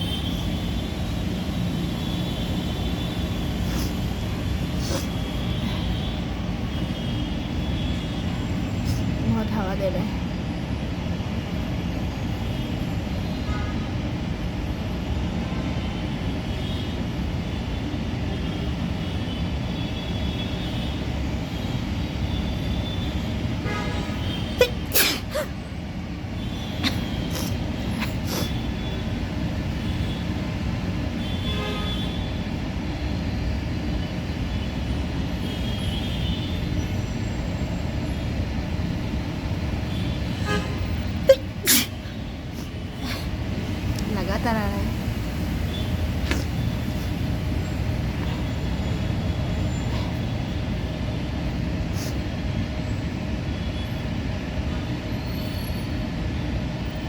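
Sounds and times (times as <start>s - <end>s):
woman sneezing: 4.8s - 5.2s, 24.6s - 25.6s, 26.8s - 28.6s, 41.2s - 43.3s.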